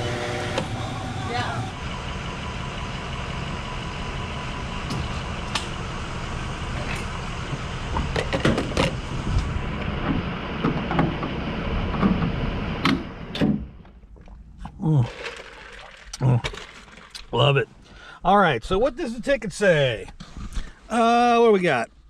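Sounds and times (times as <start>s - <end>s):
truck engine running: 0.0s - 14.6s.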